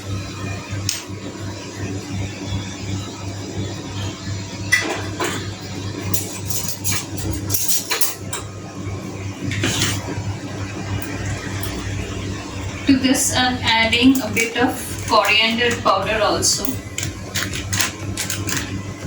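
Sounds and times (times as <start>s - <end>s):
steady low hum: 0.0s - 19.0s
spoon clinking on containers: 14.2s - 18.8s.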